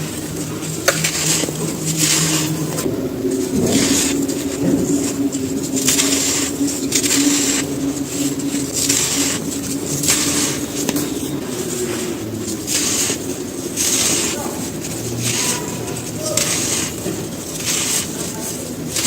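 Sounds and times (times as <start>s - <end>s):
gritty crunching of crumbling cement: 0.0s - 19.0s.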